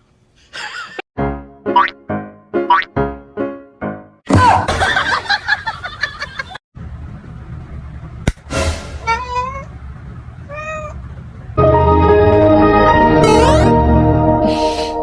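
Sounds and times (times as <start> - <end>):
cat meowing: 9.0 - 9.7, 10.5 - 11.0.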